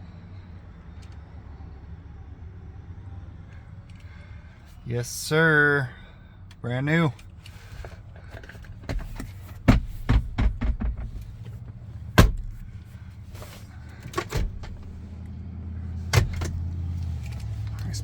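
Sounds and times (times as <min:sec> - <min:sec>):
low steady hum: 0:00.0 - 0:18.0
knocks and clicks of handling: 0:07.2 - 0:15.0, 0:16.1 - 0:17.7.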